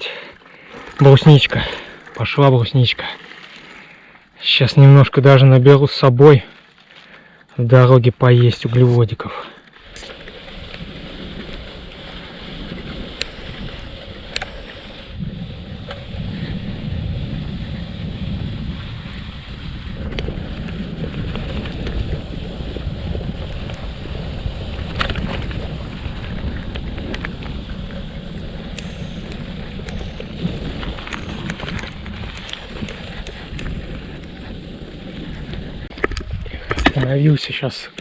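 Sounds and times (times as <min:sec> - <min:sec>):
bicycle rumbling on rough trail: 0:00.0 - 0:38.0
wind buffeting microphone: 0:09.8 - 0:37.3.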